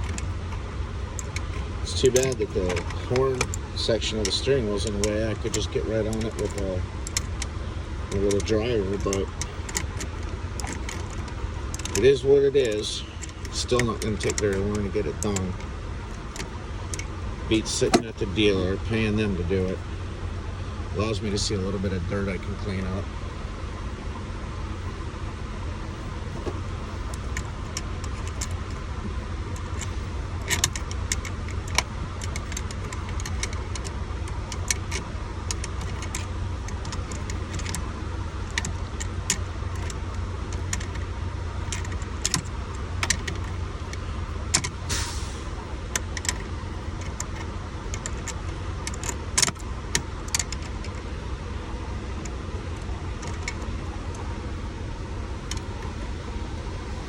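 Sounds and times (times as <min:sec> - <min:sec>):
hand tools clicking and clinking: 0:00.0 - 0:07.5, 0:08.1 - 0:18.2, 0:26.0 - 0:45.3, 0:45.9 - 0:51.0, 0:52.1 - 0:54.3
low engine rumble: 0:00.0 - 0:57.0
brief hiss: 0:44.9 - 0:45.5.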